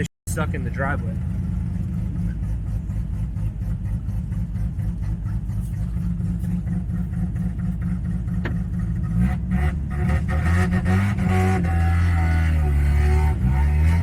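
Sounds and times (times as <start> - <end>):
rotary engine running: 1.1 - 9.2.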